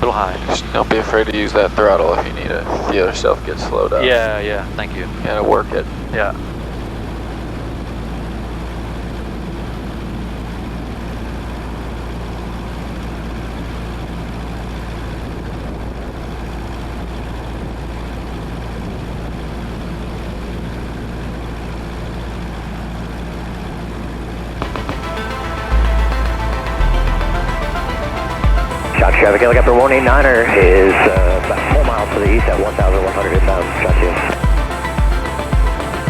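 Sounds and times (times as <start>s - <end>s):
music: 24.6s - 36.0s
small plane engine drone: 24.6s - 36.0s.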